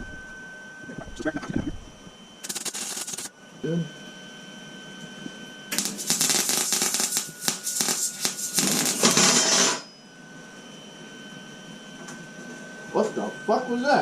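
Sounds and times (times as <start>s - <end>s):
welding arc crackling: 2.4s - 3.3s, 5.7s - 9.8s.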